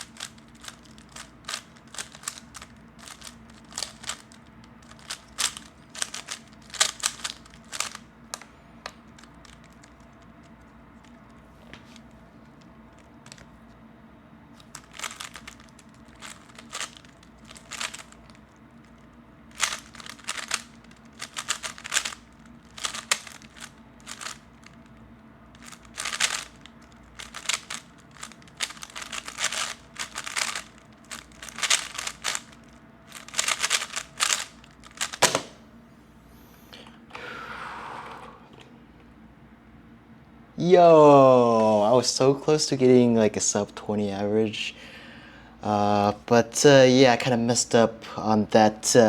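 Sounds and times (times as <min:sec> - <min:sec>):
plastic puzzle cube clicking: 0:00.0 - 0:08.4, 0:14.6 - 0:18.4, 0:19.5 - 0:24.4, 0:25.6 - 0:35.5
sharp knock: 0:35.2 - 0:35.6.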